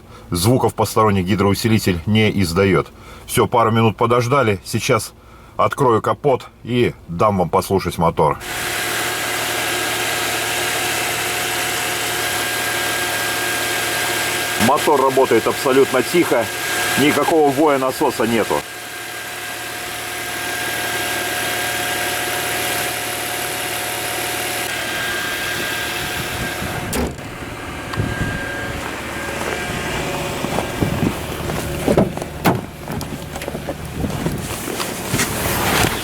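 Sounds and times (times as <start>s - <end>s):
car engine idling: 8.4s - 35.0s.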